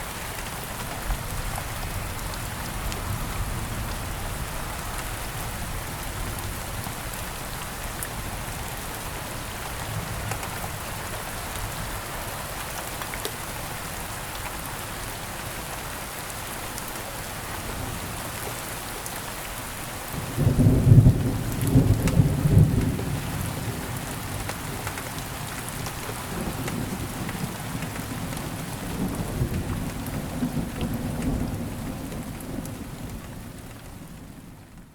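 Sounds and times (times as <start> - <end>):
steady rain falling: 0.0 - 34.9.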